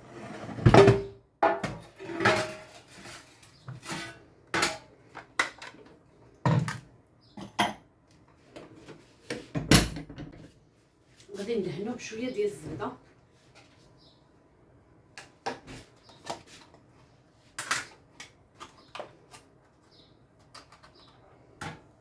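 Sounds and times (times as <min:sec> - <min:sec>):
kitchenware clanking and knocking: 0:00.5 - 0:03.1, 0:07.4 - 0:07.9, 0:09.6 - 0:10.5.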